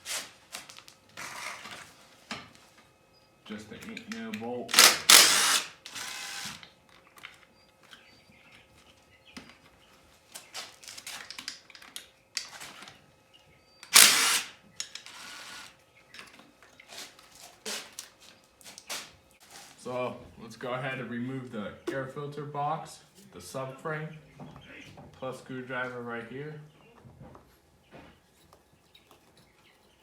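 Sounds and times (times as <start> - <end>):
tool clicks and clinks: 3.9 - 6.7, 13.8 - 16.3
loud noisy bursts: 4.7 - 6.6, 13.9 - 14.5.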